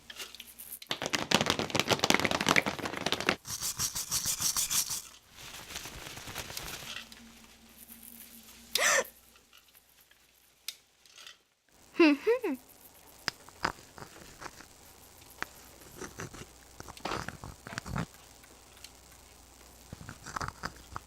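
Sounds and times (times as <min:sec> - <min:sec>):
fast high crackle: 0:00.0 - 0:10.9, 0:11.7 - 0:21.0
soft rustling: 0:04.8 - 0:11.1.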